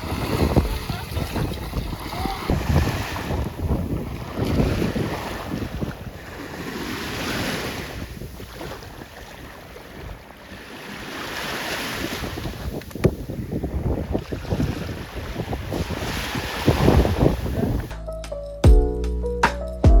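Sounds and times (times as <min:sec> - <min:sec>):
sea waves washing onto shore: 0:00.0 - 0:17.9
wind buffeting microphone: 0:00.0 - 0:17.9.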